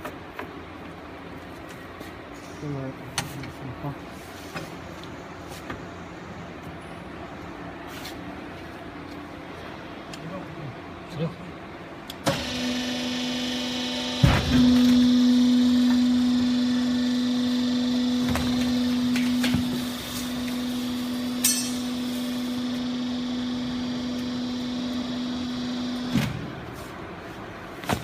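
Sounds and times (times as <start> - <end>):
hydraulic power unit humming: 8.4 - 28.0
machine shutting off clunk: 14.1 - 20.7.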